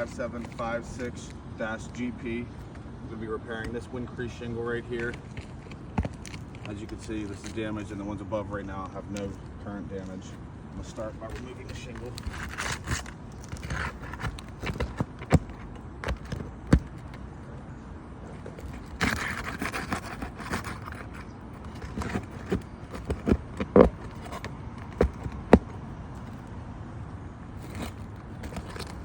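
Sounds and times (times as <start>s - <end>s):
roof shingle scraping: 0.0s - 2.9s, 3.5s - 8.0s, 8.9s - 26.6s, 27.5s - 29.0s
sharp knocks and clicks: 12.0s - 17.3s.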